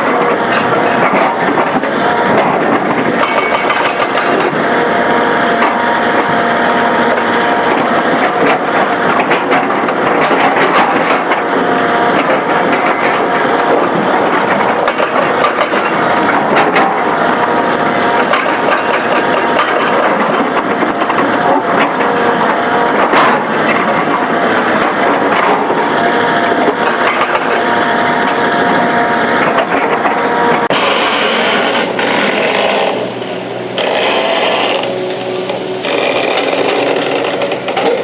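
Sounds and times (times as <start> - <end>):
sharp knocks and clanks: 0.0 - 4.6, 12.1 - 17.1, 18.2 - 25.8, 26.6 - 27.7, 35.5 - 38.0
excavator engine and hydraulics: 0.0 - 38.0.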